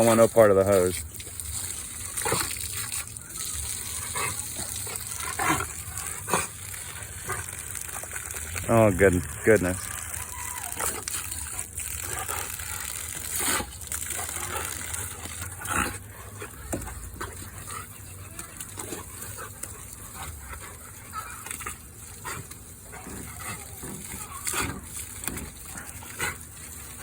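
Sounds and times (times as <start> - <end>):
garden hose spraying: 0.0 - 27.0
sharp water splashes: 0.0 - 27.0
dog snapping at water: 10.1 - 27.0.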